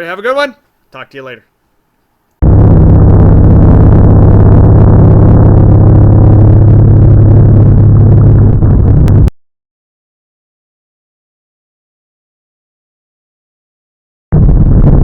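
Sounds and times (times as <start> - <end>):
motorcycle engine running: 2.4 - 9.3.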